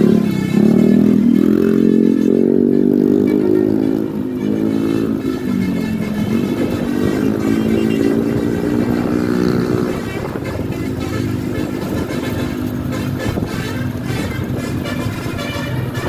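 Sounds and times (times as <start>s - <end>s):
bus engine running: 0.0s - 16.0s
multi-note bus air horn tune: 0.0s - 16.0s.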